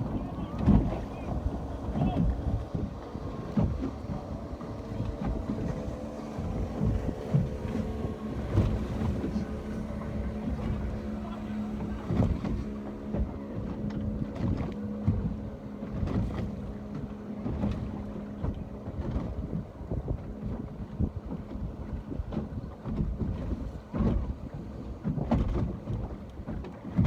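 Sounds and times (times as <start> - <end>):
boat engine hum: 0.0 - 27.0
ocean water sloshing: 0.0 - 27.0
wind buffeting microphone: 0.0 - 27.0.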